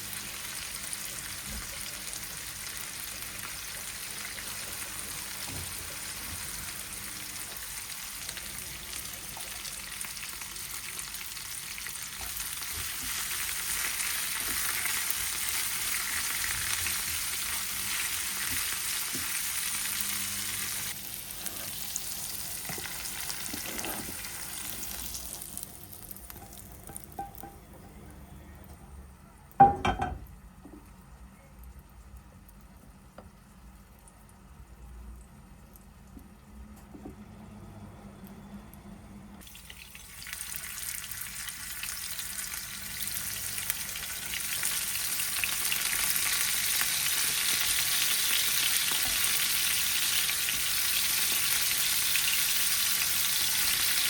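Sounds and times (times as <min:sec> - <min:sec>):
food sizzling in a hot pan: 0:00.0 - 0:27.5, 0:39.4 - 0:54.0
utensil knocking against pan: 0:29.6 - 0:30.2.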